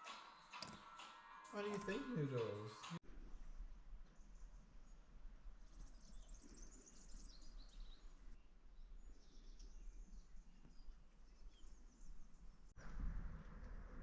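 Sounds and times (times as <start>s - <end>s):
faint birds chirping: 0.0s - 12.8s.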